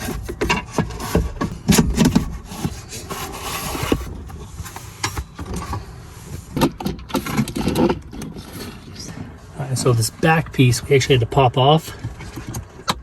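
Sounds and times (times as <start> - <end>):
plastic parts rubbing and scraping: 0.0 - 10.4.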